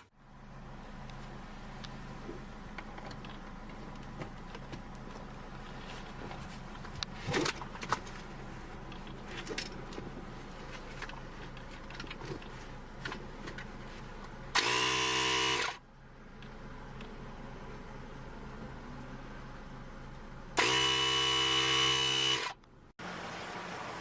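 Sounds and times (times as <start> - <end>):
faint steady hum: 0.0 - 23.0
air compressor buzzing: 14.5 - 15.8, 20.6 - 22.6.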